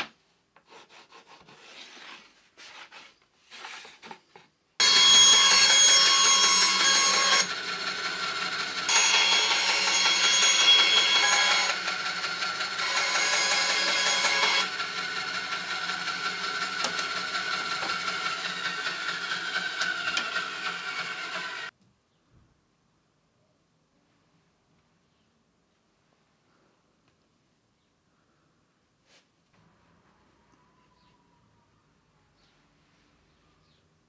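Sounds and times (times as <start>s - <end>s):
woodworking power tool whining: 4.8s - 21.7s.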